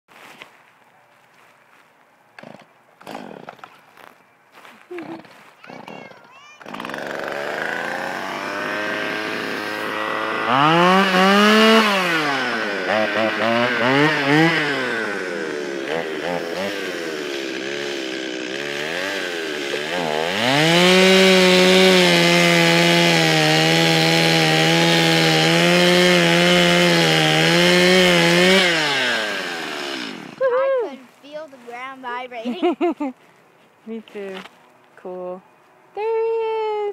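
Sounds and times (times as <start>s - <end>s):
chainsaw cutting wood: 2.4s - 4.0s, 5.0s - 30.6s.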